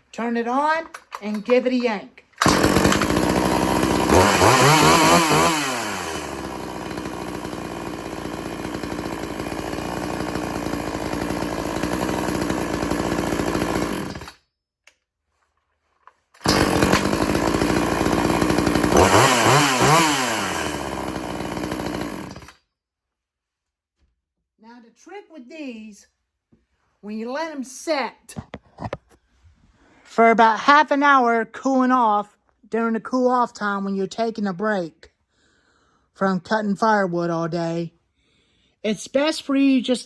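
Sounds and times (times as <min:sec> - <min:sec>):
chainsaw revving and idling: 0:02.4 - 0:14.4, 0:16.4 - 0:22.6.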